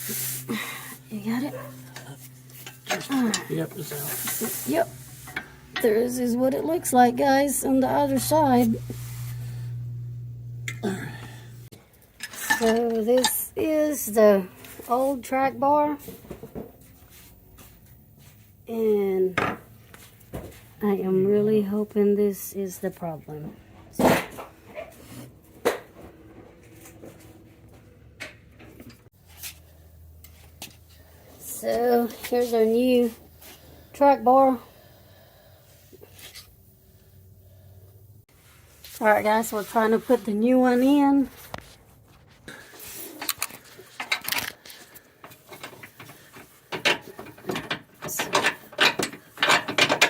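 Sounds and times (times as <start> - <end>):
metal clicking and clanking: 2.0 - 4.5, 45.2 - 50.0
knocks of parts being handled: 45.2 - 50.0.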